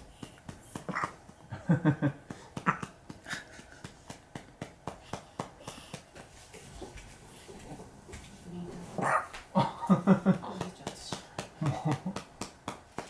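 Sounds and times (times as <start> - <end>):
soft patting on baby's back: 0.0 - 1.4, 2.2 - 8.4.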